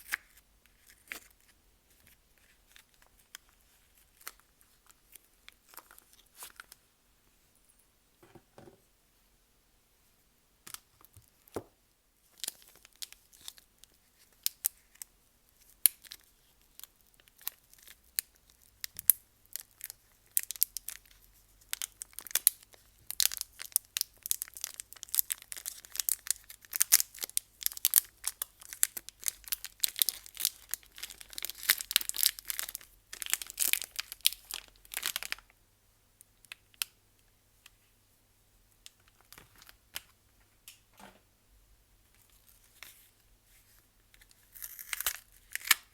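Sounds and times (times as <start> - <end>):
soap wrapping tearing and crinkling: 0.0 - 6.8, 12.3 - 35.5, 38.8 - 40.1, 44.1 - 45.9.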